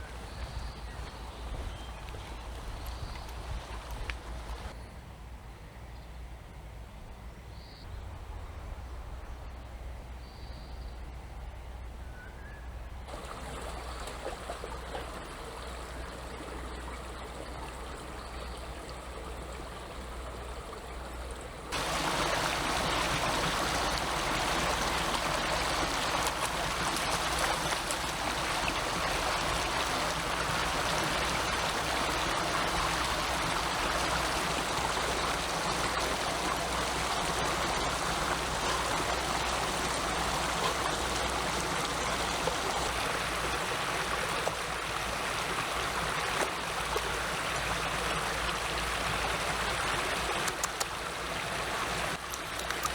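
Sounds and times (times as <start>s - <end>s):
stream running over rocks: 0.0s - 4.8s, 13.1s - 52.9s.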